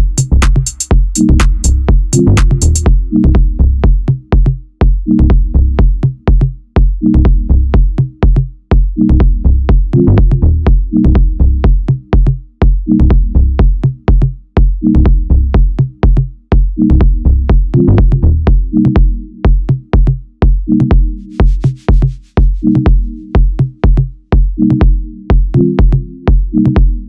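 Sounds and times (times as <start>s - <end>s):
electronic dance music: 0.0s - 3.2s, 21.3s - 23.8s.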